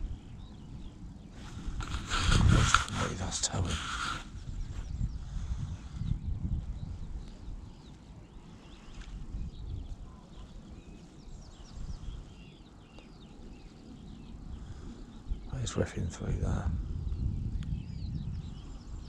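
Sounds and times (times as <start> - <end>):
steady low rumble: 0.0 - 8.6
small birds chirping: 0.0 - 19.0.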